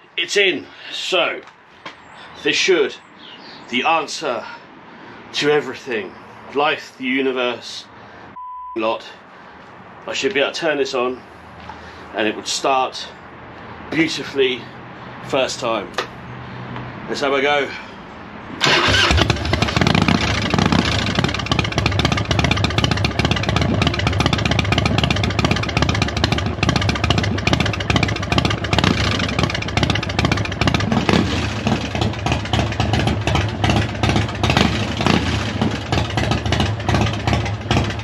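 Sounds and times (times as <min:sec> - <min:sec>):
motorcycle engine running: 0:18.6 - 0:38.0.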